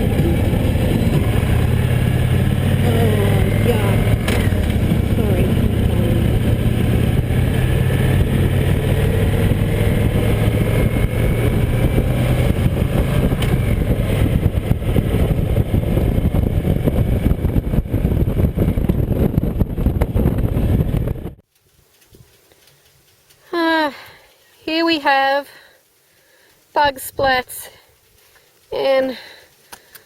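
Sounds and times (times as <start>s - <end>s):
motorcycle engine running: 0.0s - 21.4s
wind noise: 0.0s - 23.2s
road noise: 0.0s - 30.0s.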